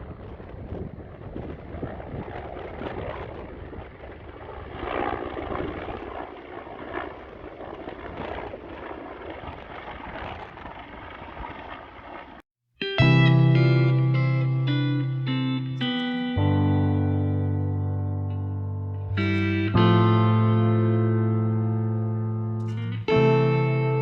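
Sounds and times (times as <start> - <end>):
wind rumbling on microphone: 0.0 - 12.4.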